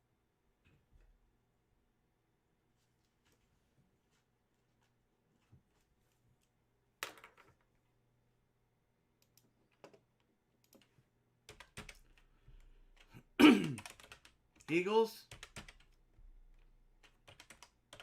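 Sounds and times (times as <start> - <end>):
keyboard typing: 10.6 - 18.0.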